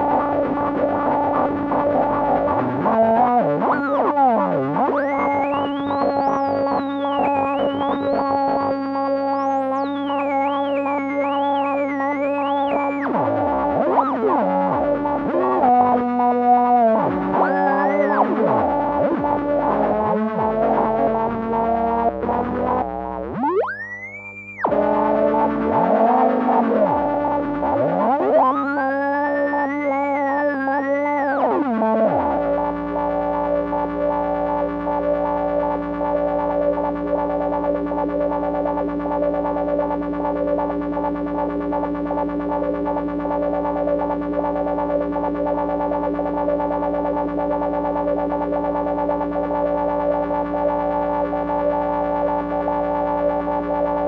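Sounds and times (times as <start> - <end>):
electronic noise drone: 0.0 - 54.0.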